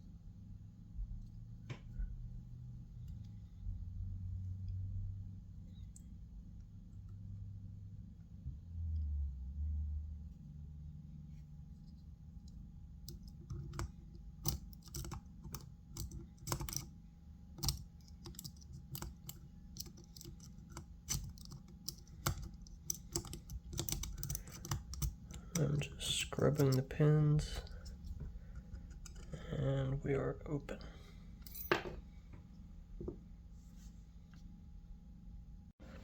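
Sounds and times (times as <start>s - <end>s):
lock pick clicking on padlock pins: 13.0s - 16.9s, 17.6s - 25.6s.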